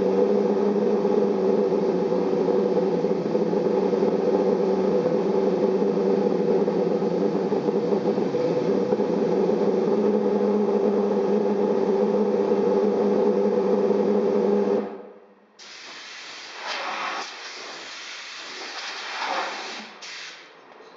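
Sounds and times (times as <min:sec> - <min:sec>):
pulse jet engine buzzing drone: 0:00.0 - 0:15.2
hissing rushes of air: 0:15.6 - 0:20.5.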